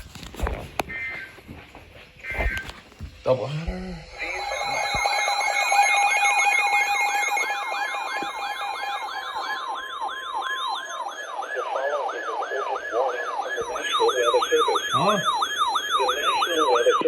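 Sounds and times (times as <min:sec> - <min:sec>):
steady alert tones: 0:03.2 - 0:17.0
siren-like wail falling in pitch: 0:03.6 - 0:17.0.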